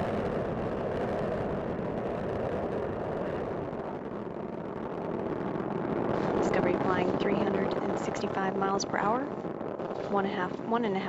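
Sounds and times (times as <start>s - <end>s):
rocket engines rumbling: 0.0s - 11.0s.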